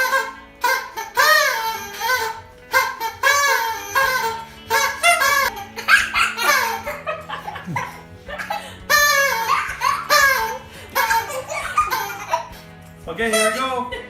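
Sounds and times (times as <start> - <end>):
background music with bass: 0.0 - 14.0
young children laughing and squealing: 5.8 - 12.6.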